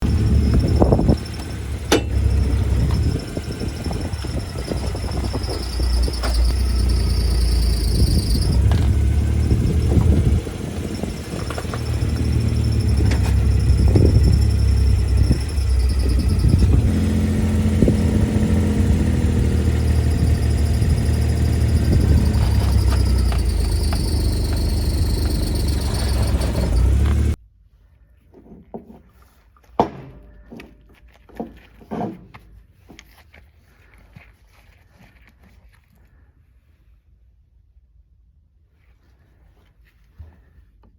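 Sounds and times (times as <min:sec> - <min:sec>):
engine and drivetrain rumble: 0:00.0 - 0:27.4
sharp cracks from drivetrain: 0:21.0 - 0:27.4.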